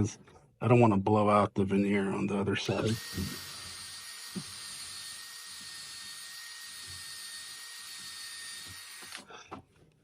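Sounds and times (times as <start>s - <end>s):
electric drill boring wood: 2.8s - 9.3s.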